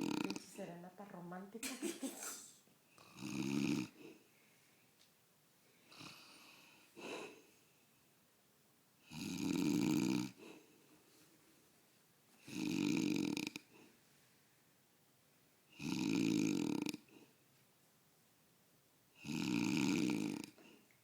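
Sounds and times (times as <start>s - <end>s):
man snoring loudly: 0.0s - 0.4s, 3.1s - 3.9s, 9.1s - 10.4s, 12.5s - 13.6s, 15.8s - 17.0s, 19.2s - 20.5s
faint breath sounds: 5.6s - 8.1s, 10.3s - 11.4s.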